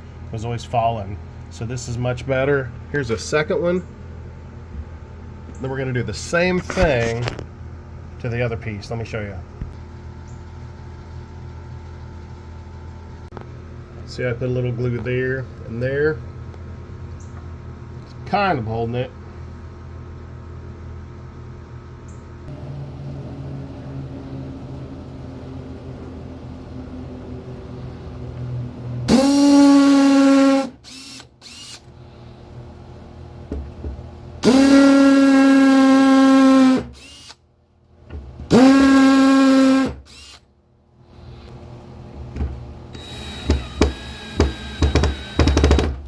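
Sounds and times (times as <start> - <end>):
power drill drilling into wood: 29.1 - 31.8, 34.4 - 37.4, 38.5 - 40.4, 43.0 - 45.9.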